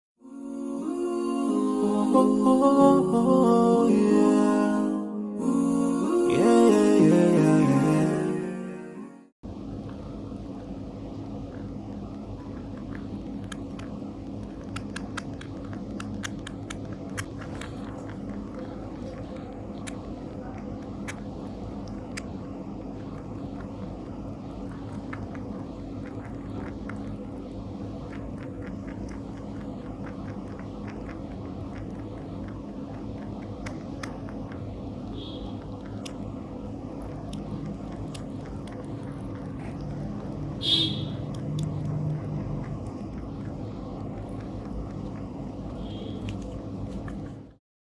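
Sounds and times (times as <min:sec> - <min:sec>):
steady low hum: 0:00.2 - 0:47.6
rabbits chewing wetly: 0:09.5 - 0:47.6.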